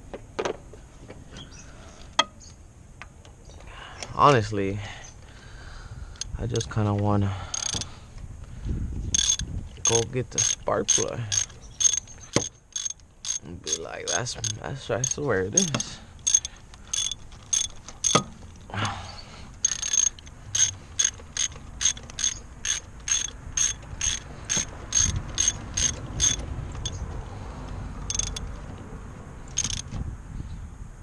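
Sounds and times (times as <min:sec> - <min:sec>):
socket ratchet clicking: 0:07.5 - 0:07.9, 0:09.2 - 0:18.7, 0:19.6 - 0:27.1, 0:28.0 - 0:28.5, 0:29.5 - 0:29.9.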